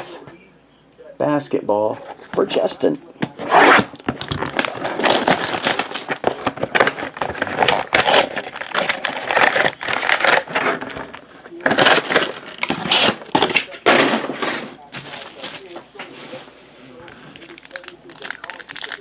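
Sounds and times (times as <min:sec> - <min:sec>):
wrapper and cardboard crinkling: 0:03.6 - 0:13.7, 0:17.2 - 0:19.0.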